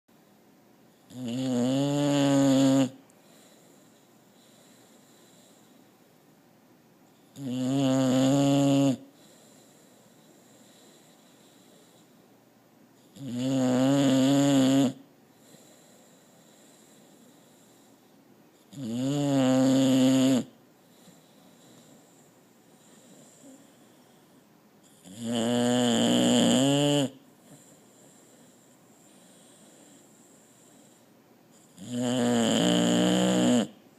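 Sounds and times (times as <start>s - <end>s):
long pitched snore: 1.1s - 3.0s, 7.3s - 9.4s, 13.0s - 17.8s, 18.6s - 22.1s, 24.9s - 33.8s.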